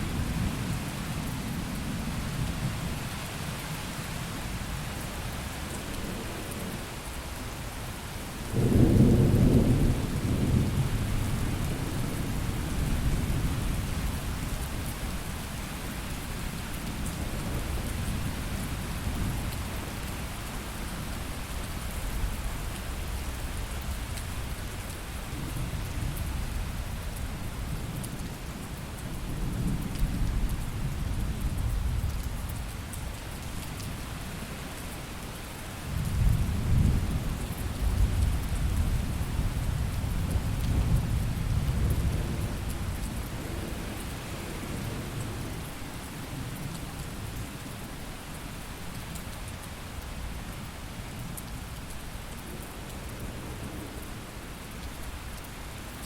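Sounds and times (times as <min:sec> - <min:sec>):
steady rain: 0:00.0 - 0:56.0
rolling thunder: 0:08.5 - 0:13.4.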